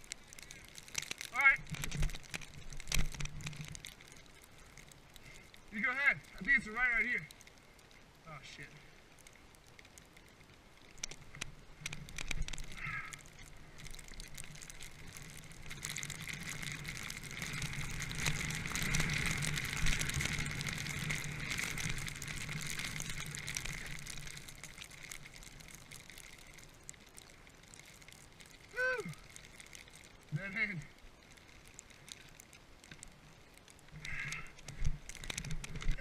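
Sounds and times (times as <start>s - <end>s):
skiing through powder snow: 14.2s - 26.6s.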